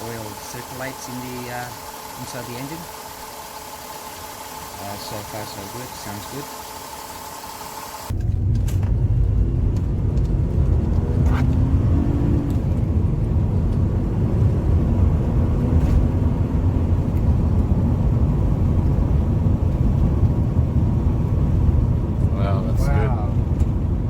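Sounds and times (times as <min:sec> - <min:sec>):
road noise: 0:00.0 - 0:06.8, 0:07.6 - 0:24.0
car engine accelerating: 0:08.0 - 0:24.0.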